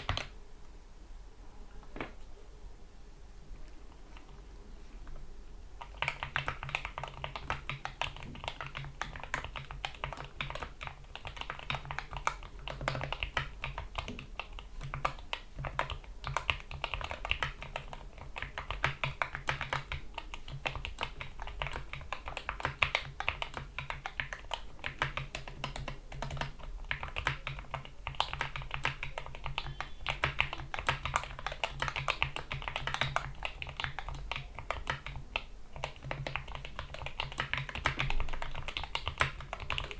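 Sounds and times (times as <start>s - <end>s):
fast typing on mechanical keyboard: 0.0s - 0.3s, 5.8s - 39.9s.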